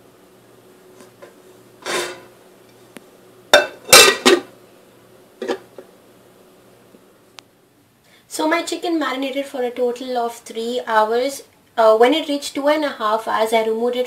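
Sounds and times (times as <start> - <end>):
dish scraping: 1.0 - 2.3, 3.6 - 4.5, 5.4 - 5.7
dishes clattering down: 1.8 - 2.3, 3.6 - 4.5.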